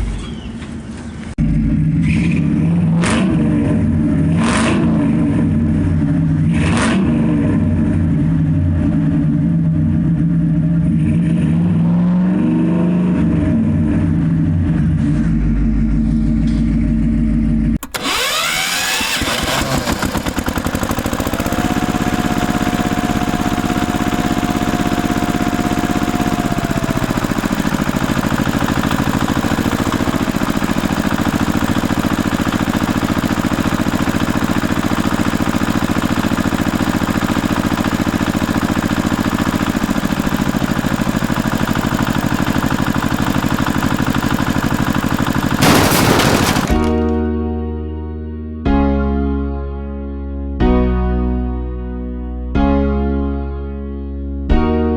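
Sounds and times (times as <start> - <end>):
construction vehicle engine chugging: 14.5 - 47.2.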